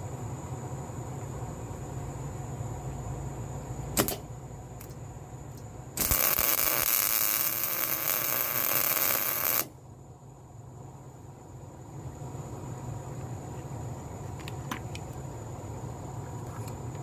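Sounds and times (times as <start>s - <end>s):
arc welding crackling hiss: 3.9s - 9.8s.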